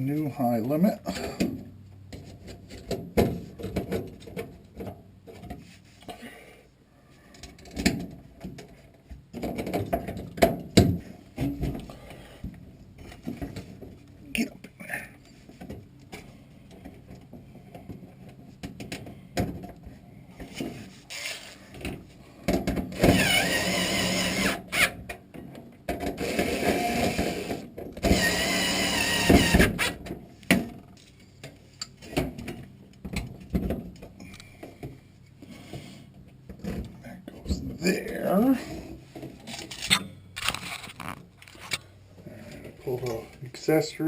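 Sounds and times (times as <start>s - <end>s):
cordless drill motor running: 21.1s - 21.6s, 23.0s - 24.9s, 26.2s - 30.0s.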